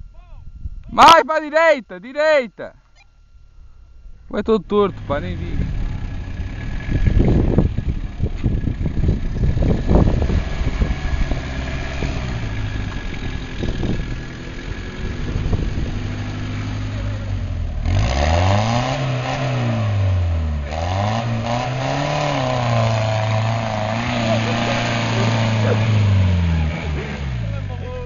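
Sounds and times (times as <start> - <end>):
off-road vehicle engine revving: 4.7 - 28.0.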